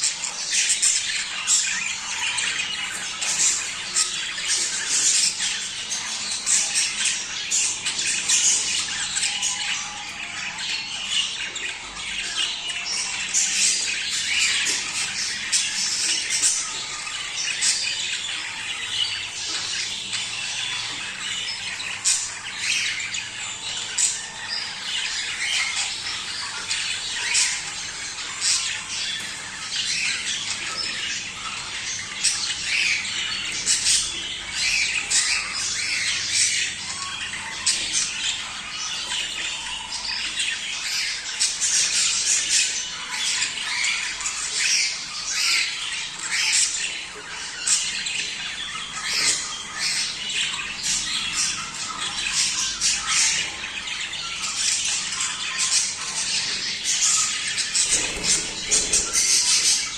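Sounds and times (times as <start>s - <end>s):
budgerigars chattering: 0.0s - 59.9s.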